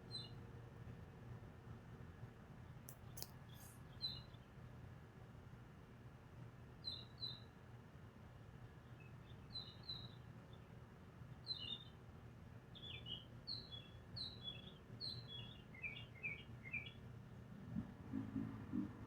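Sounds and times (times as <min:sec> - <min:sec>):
small bird chirping: 0:00.1 - 0:00.4, 0:02.9 - 0:04.6, 0:06.8 - 0:07.5, 0:08.8 - 0:10.7, 0:11.4 - 0:12.0, 0:12.7 - 0:17.0.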